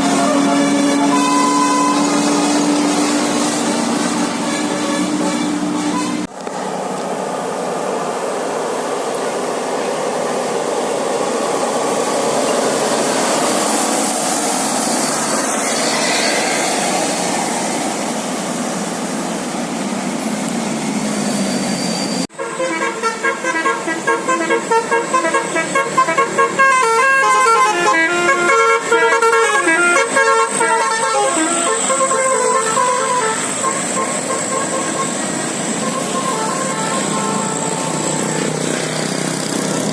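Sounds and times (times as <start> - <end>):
bus musical horn tune: 0.0 - 6.3, 22.3 - 38.4
rushing road noise: 0.0 - 39.9.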